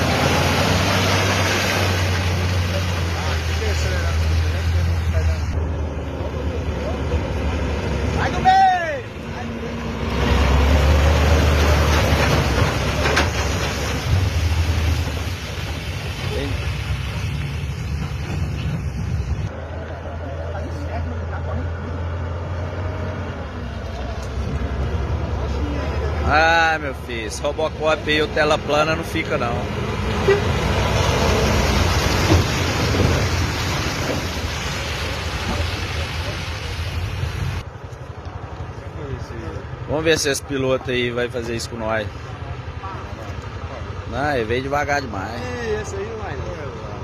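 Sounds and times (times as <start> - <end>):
diesel truck engine rumbling: 0.0 - 47.0
diesel truck engine under load: 9.2 - 19.4.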